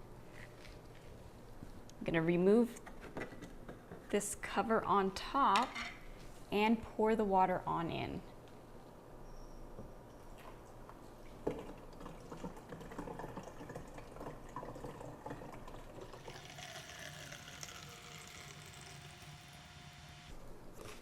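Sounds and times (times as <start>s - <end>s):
water pouring into tank: 11.5s - 20.3s.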